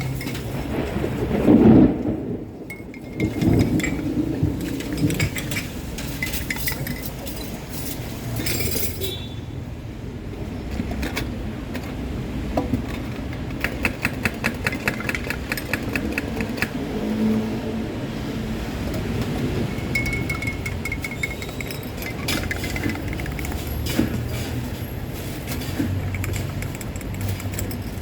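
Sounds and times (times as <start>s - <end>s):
utensils and glassware clinking: 0.0s - 0.7s, 2.7s - 9.3s, 18.8s - 28.0s.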